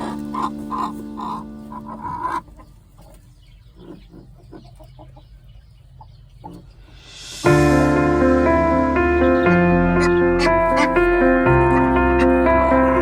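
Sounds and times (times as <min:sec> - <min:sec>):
background music: 0:00.0 - 0:02.4, 0:07.1 - 0:13.0
loud piano music: 0:00.0 - 0:02.4, 0:07.4 - 0:13.0
poultry calling: 0:00.0 - 0:06.9, 0:09.2 - 0:13.0.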